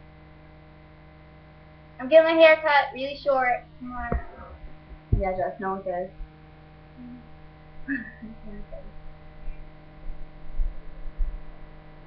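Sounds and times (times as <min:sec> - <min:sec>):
electrical mains hum: 0:00.0 - 0:12.0
low bumps: 0:03.8 - 0:06.3.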